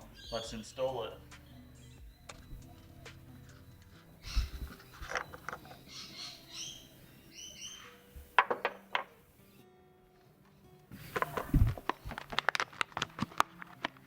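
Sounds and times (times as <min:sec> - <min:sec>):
short high squeaks: 0:01.5 - 0:08.4
clicks and scrapes of handling: 0:11.0 - 0:14.0.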